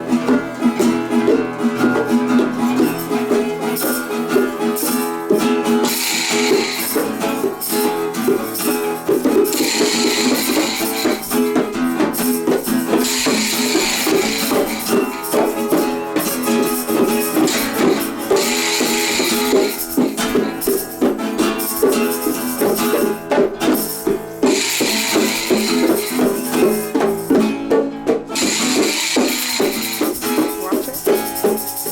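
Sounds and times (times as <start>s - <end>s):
rattling shaker percussion: 0.0s - 31.9s
busy run of pitched notes: 4.6s - 20.1s.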